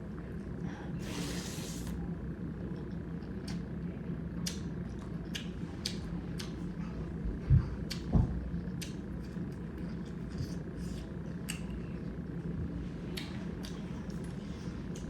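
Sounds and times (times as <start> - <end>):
low steady hum: 0.0 - 15.0
chewing and mouth sounds: 4.4 - 12.2, 13.1 - 15.0.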